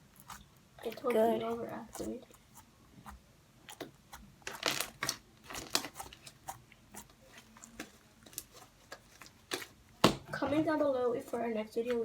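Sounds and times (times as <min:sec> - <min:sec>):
slime clicking and crackling: 0:03.7 - 0:09.8.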